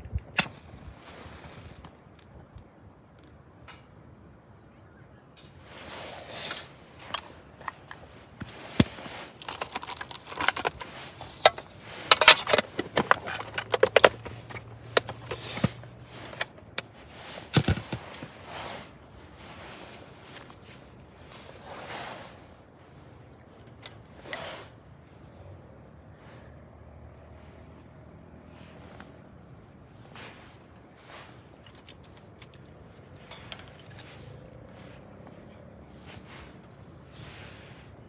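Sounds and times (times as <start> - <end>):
sharp clicks snips and scrapes: 5.4 - 18.8, 31.1 - 38.0
rustling: 5.4 - 25.3, 27.4 - 38.0.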